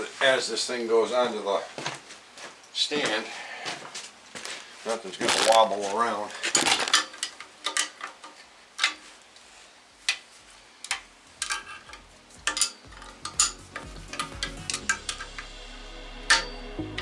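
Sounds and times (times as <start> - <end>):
hand tools clinking on bolts: 5.2 - 9.1, 10.9 - 15.2
background music: 11.1 - 17.0.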